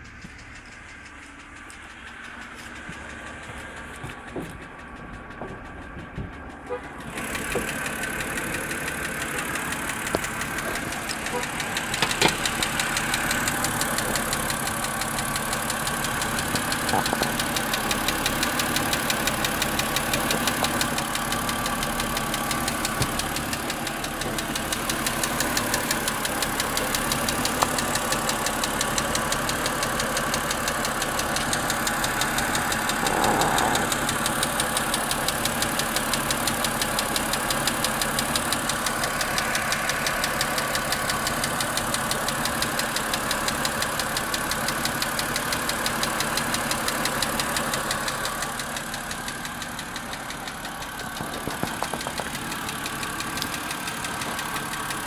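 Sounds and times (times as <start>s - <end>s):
car engine idling: 0.0s - 55.0s
fast engine ticking: 0.0s - 55.0s.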